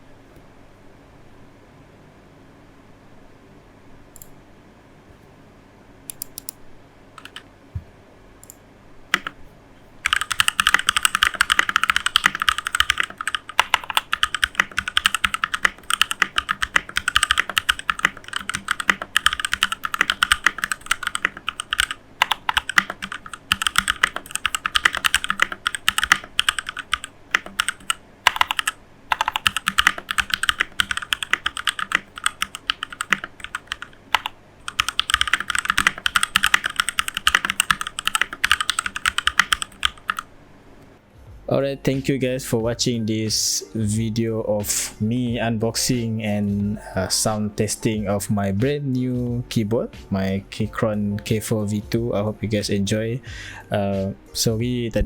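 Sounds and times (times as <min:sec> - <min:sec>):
mechanical keyboard typing: 0:06.1 - 0:06.6, 0:07.2 - 0:07.4, 0:08.4 - 0:09.4, 0:10.0 - 0:40.2.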